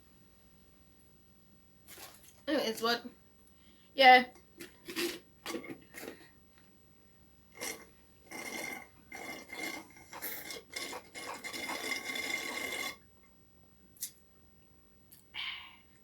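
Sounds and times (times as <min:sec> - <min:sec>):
food packaging rustling: 0:01.9 - 0:02.4, 0:04.6 - 0:06.3.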